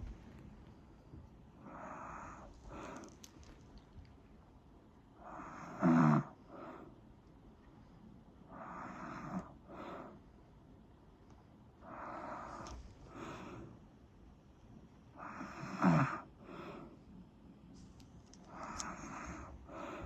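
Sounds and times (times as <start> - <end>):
rasping snoring: 5.4 - 6.4, 15.2 - 16.3.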